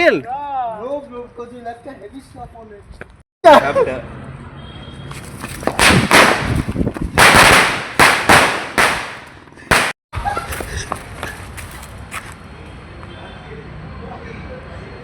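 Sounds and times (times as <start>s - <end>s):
firecrackers banging: 5.6s - 10.0s.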